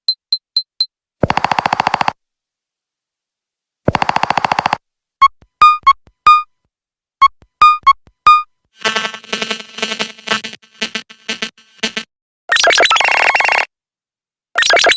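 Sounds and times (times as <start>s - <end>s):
glitchy buzzing ringtone: 8.8s - 13.7s.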